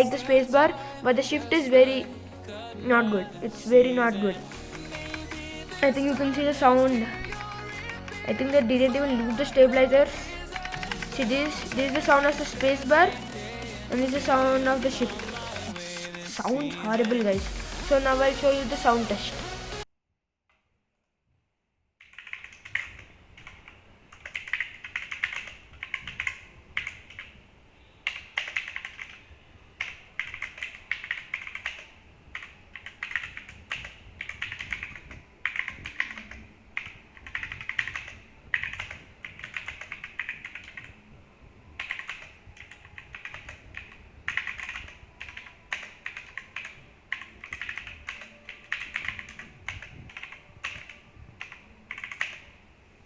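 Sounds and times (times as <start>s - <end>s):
mechanical keyboard typing: 4.5s - 17.4s, 22.0s - 27.4s, 28.0s - 41.0s, 41.8s - 52.6s.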